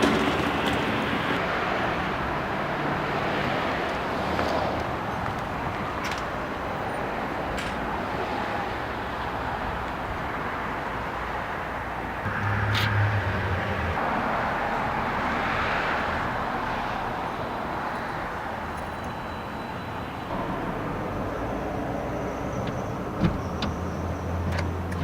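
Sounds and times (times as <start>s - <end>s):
road vehicle running: 0.0s - 25.0s
steady low hum: 12.2s - 14.9s.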